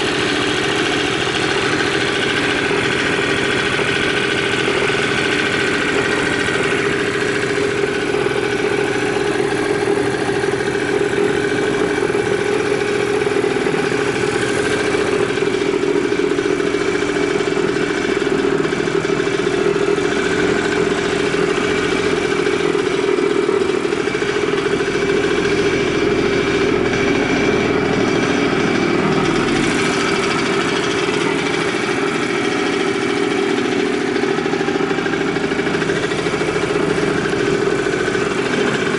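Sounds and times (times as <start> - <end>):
motorcycle engine idling: 0.0 - 38.9.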